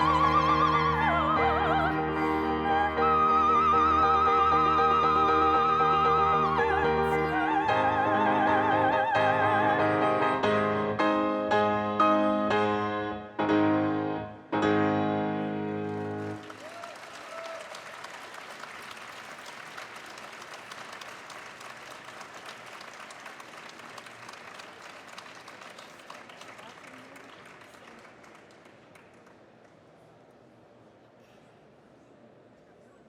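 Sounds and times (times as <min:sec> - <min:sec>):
piano chords: 0:00.0 - 0:16.4
audience applause: 0:15.8 - 0:30.0.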